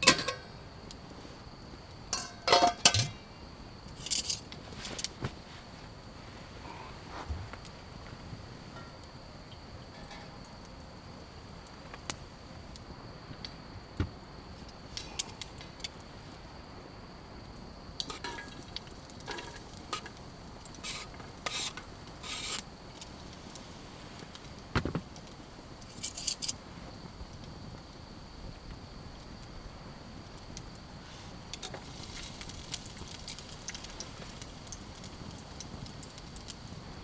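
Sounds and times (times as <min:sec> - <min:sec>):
food sizzling: 0:18.0 - 0:26.6, 0:31.4 - 0:37.0
utensil scraping in a pan: 0:20.8 - 0:22.7, 0:25.9 - 0:26.6.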